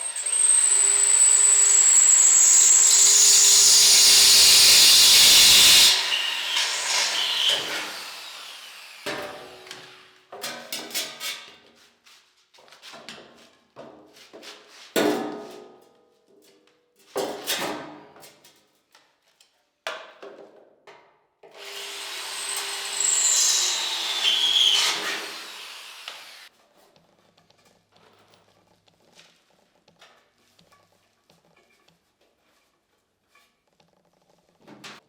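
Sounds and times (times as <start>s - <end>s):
power tool running: 0.0s - 9.6s, 21.6s - 26.5s.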